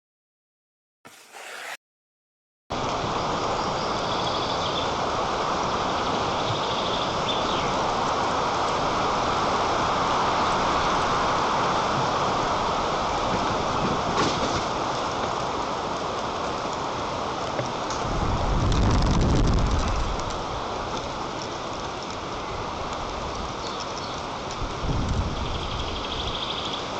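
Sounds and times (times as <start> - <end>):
strong wind on microphone: 18.0 - 20.3, 24.6 - 26.4.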